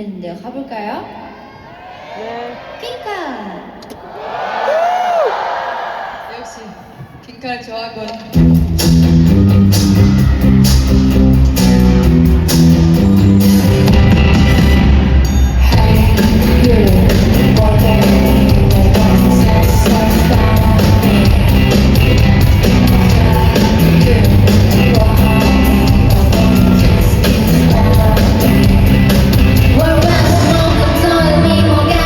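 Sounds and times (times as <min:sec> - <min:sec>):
live pop-rock band: 0:08.3 - 0:32.0
person singing: 0:15.6 - 0:32.0.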